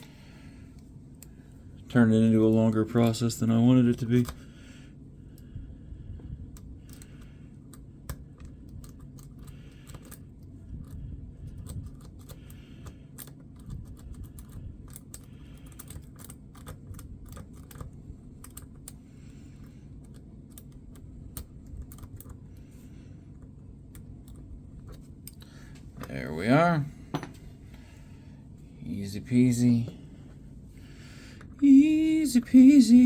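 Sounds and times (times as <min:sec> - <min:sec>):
lock tools clicking and scraping: 0:06.6 - 0:19.0.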